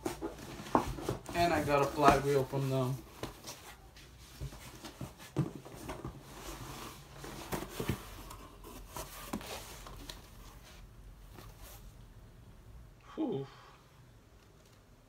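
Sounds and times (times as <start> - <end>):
cardboard and wrapping rustling: 0.0 - 12.0.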